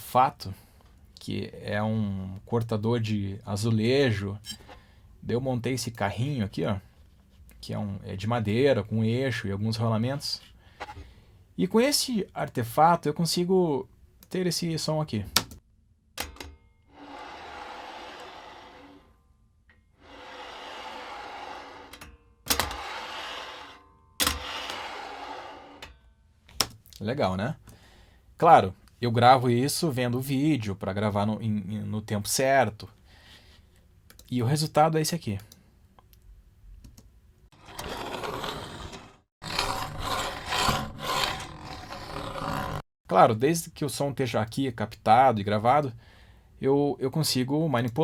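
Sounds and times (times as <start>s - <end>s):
small wooden cart rolling: 37.6s - 42.8s.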